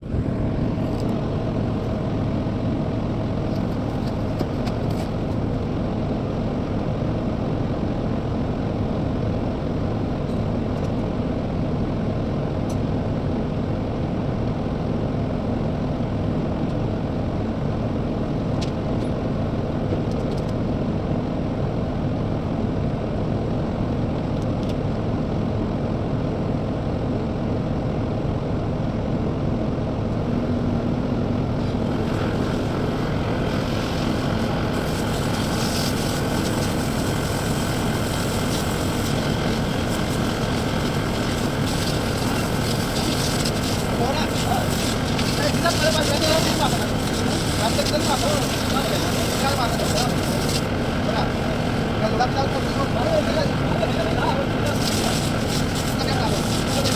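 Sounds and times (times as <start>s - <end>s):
diesel engine running: 0.0s - 56.9s
high hiss: 31.8s - 56.9s.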